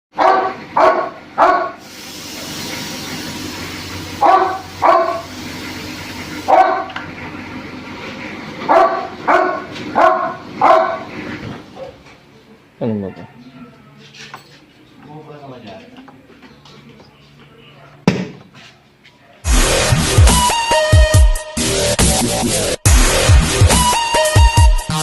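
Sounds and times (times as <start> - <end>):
dog barking: 0.1 - 1.8, 4.2 - 5.3, 6.5 - 7.0, 8.7 - 11.1, 11.8 - 12.0, 13.0 - 13.4
steady hiss: 1.8 - 6.5.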